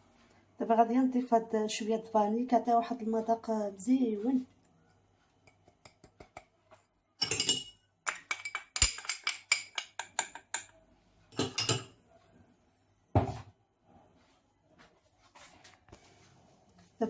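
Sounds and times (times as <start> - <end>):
utensils clinking against bowl: 7.2 - 10.7, 11.4 - 12.0.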